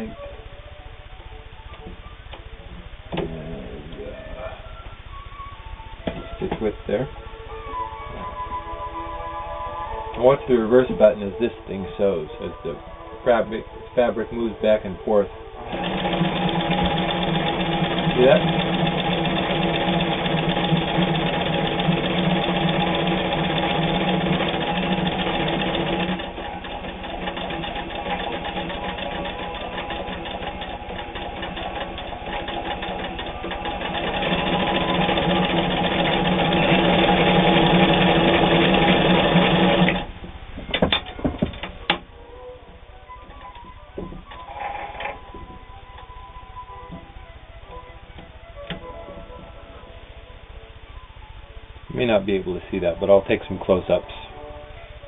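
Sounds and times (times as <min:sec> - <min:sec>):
sewing machine sewing: 0:15.6 - 0:40.1, 0:44.2 - 0:45.3
sewing machine clicks: 0:15.7 - 0:40.1.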